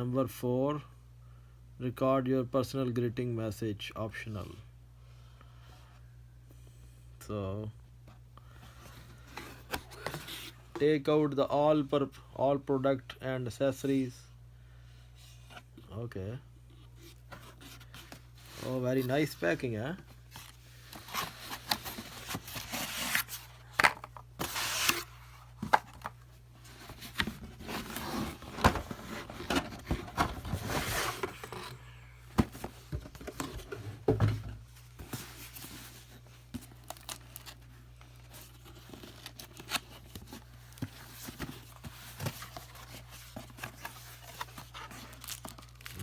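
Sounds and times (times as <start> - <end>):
packaging rustling and tearing: 20.3 - 31.7, 35.0 - 46.0.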